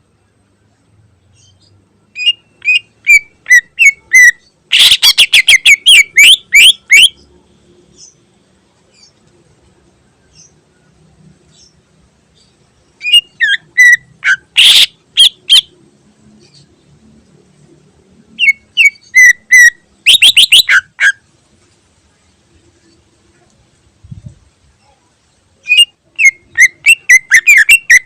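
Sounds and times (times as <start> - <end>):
bird singing whistled chirps: 1.5 - 7.2, 13.0 - 15.7, 18.4 - 20.9, 25.6 - 28.0.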